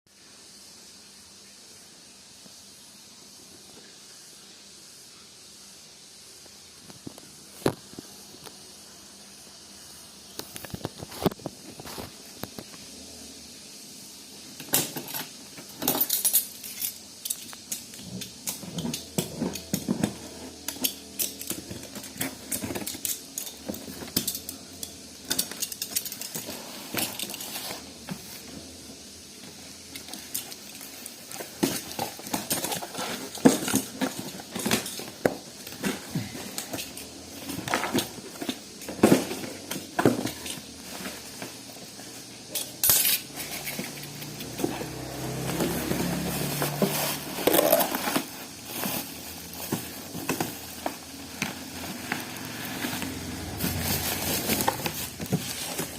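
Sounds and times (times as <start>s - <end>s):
steady hiss: 0.1s - 55.9s
small hard objects clinking: 42.5s - 55.9s.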